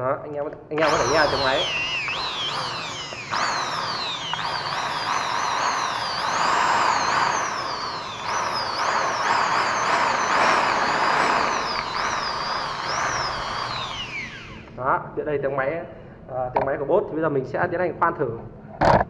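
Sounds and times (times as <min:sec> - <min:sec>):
drill motor whine: 0:00.8 - 0:14.8.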